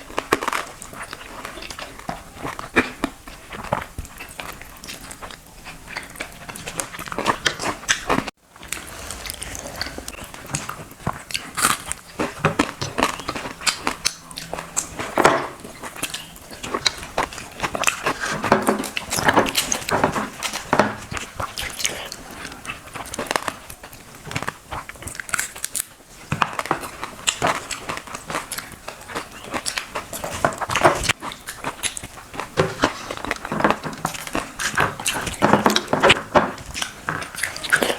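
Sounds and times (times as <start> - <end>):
person chewing and biting: 3.7 - 15.1.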